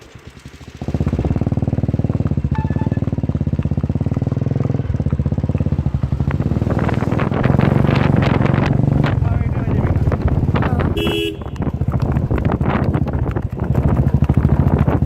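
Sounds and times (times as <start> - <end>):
small engine running: 0.0 - 7.0.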